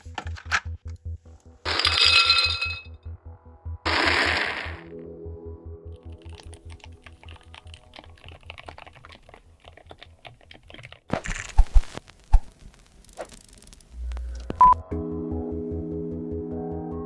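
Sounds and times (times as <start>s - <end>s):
fast typing on a keyboard: 6.2s - 11.8s.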